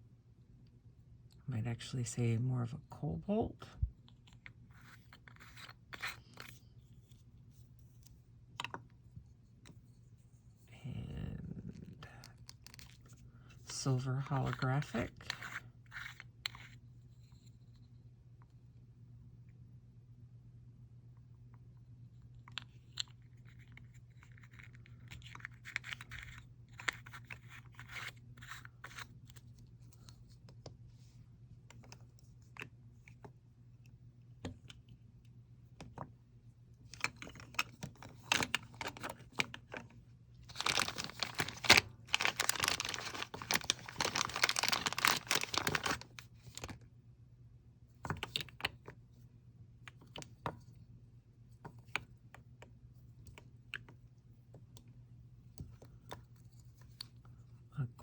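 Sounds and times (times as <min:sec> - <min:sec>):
crinkling handling noise: 0:12.0 - 0:16.2, 0:36.8 - 0:46.8.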